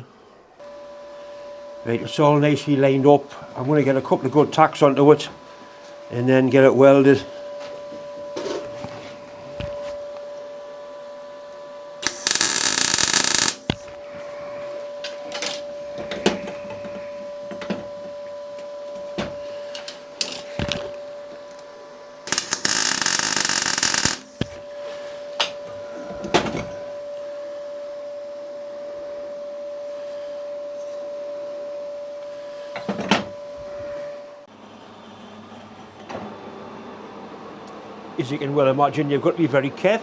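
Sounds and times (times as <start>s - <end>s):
steady hum: 0.0s - 32.7s
welding arc bursts: 12.0s - 13.9s, 22.3s - 24.6s.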